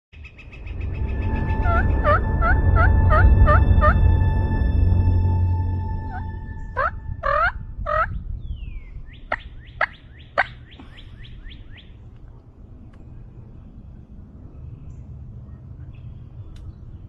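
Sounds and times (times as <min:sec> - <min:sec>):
bird singing: 0:00.2 - 0:04.0, 0:05.4 - 0:12.0
held music tones: 0:00.5 - 0:07.8.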